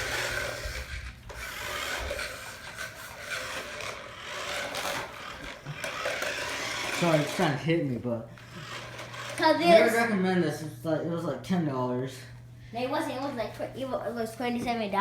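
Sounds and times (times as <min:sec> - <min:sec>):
toy car scraping: 0:00.0 - 0:07.6, 0:08.4 - 0:10.1.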